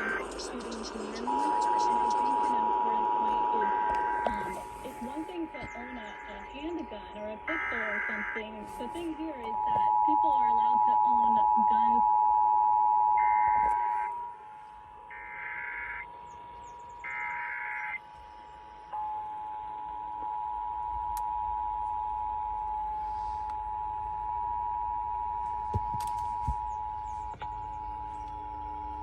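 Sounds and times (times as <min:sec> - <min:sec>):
data header squeals: 0:00.0 - 0:12.1, 0:15.1 - 0:18.9
two-tone alert signal over radio: 0:00.0 - 0:12.3.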